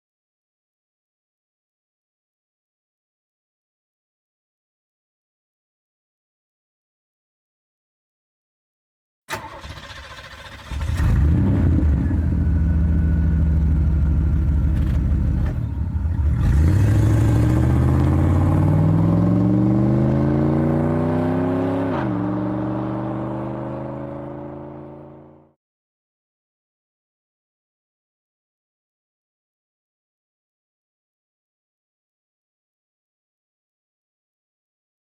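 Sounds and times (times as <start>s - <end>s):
car engine accelerating: 10.5s - 25.6s.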